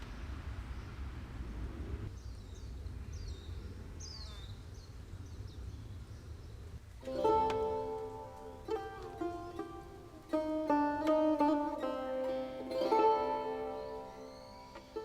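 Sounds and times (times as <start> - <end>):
low outdoor rumble: 0.0 - 13.0
plucked-string music: 7.0 - 15.0
bird singing high notes: 11.4 - 15.0.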